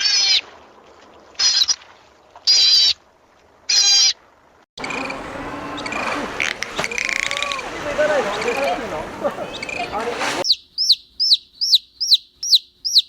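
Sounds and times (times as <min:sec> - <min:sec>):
animal high-pitched calls: 0:04.8 - 0:08.7.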